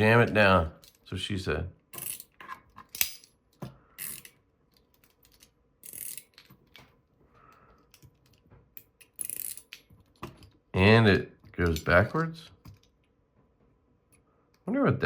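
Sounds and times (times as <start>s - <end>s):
metal fidget toy clacking: 5.2s - 6.5s.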